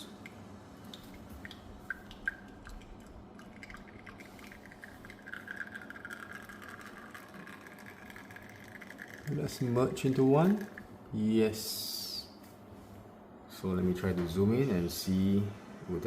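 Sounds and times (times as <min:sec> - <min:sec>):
espresso hissing and trickling: 0:03.5 - 0:10.9
espresso machine noise: 0:03.6 - 0:10.9.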